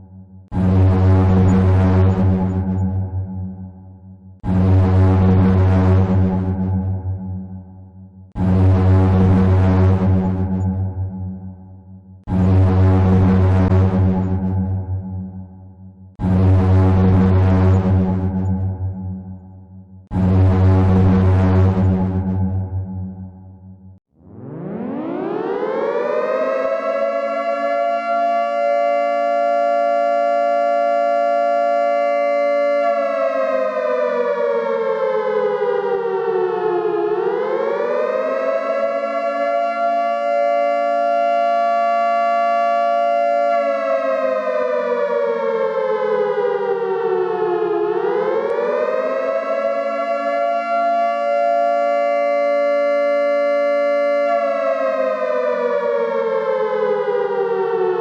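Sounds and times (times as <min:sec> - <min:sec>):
warning siren wailing: 0:00.0 - 0:58.0.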